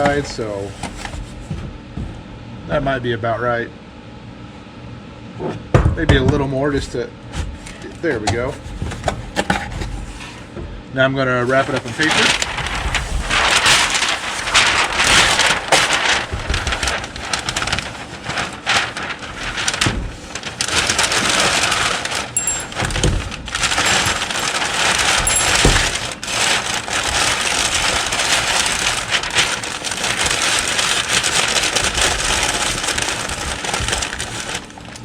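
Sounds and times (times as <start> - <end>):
packing paper crinkling: 0.0 - 1.5, 11.4 - 35.0.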